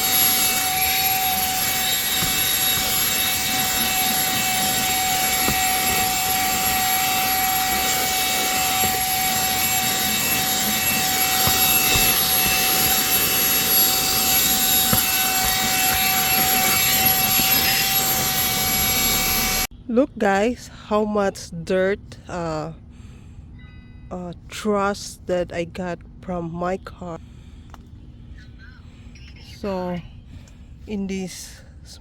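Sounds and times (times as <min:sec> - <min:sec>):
handheld vacuum motor whine: 0:00.0 - 0:19.7.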